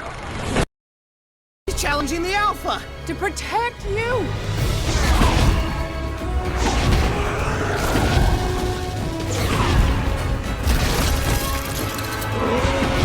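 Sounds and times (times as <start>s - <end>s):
dramatic orchestral music: 1.7s - 13.0s
dragon roars: 6.5s - 10.4s.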